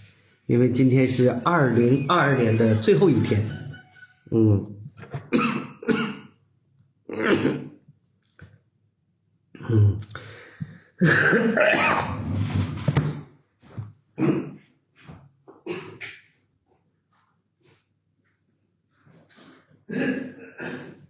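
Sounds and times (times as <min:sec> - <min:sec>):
man coughing: 0:05.2 - 0:06.2, 0:07.2 - 0:07.7, 0:11.0 - 0:12.2, 0:19.9 - 0:21.0.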